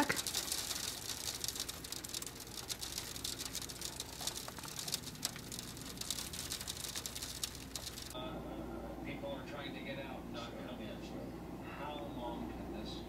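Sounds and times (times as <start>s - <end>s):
snow ticking on car windshield: 0.0s - 8.2s.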